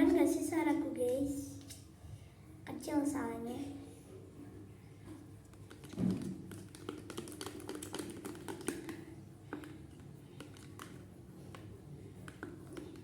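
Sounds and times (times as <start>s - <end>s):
thump: 6.0s - 6.4s.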